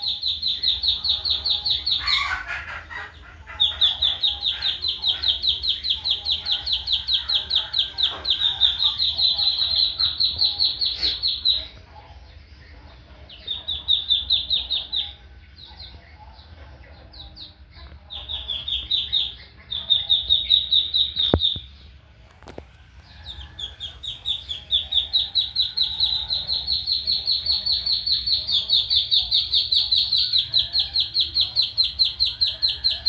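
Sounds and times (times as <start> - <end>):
duckling peeping: 0.0 - 11.8, 12.6 - 21.8, 22.4 - 33.0.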